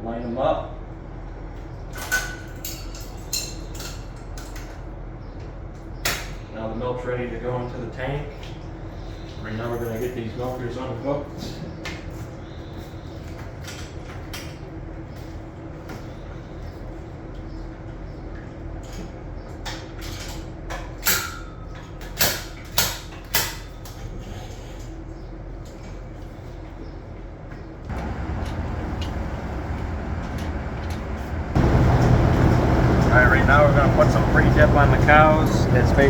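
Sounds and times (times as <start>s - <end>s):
steady machinery hum: 27.7s - 36.0s.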